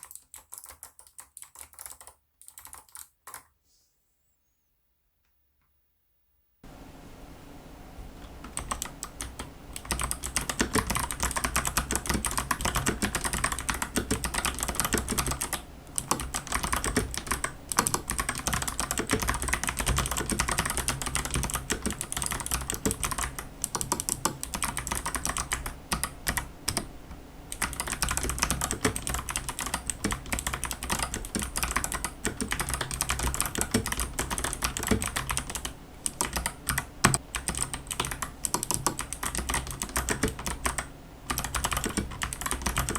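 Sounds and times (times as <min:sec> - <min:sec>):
mechanical keyboard typing clicks: 0:00.0 - 0:03.5, 0:08.4 - 0:26.8, 0:27.5 - 0:42.9.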